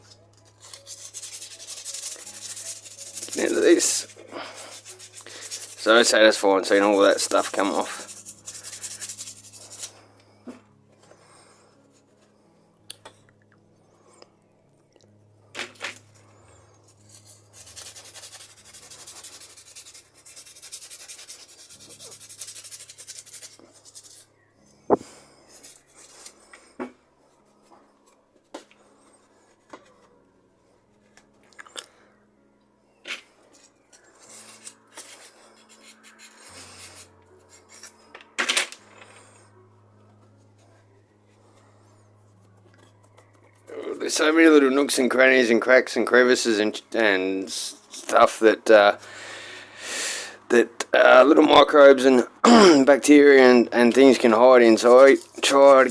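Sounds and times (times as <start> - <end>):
abrasive paper scrubbing metal: 0.6 - 9.9.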